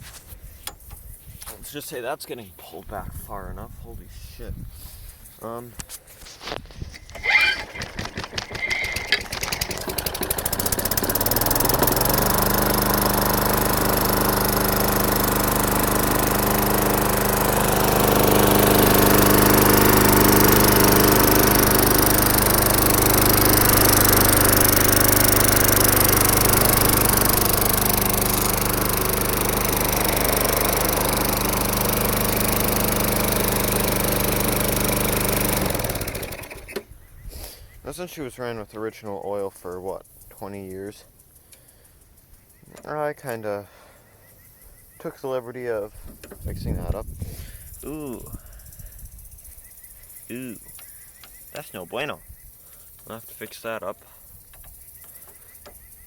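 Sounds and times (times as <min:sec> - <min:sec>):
lawn mower engine running: 0:06.4 - 0:37.0.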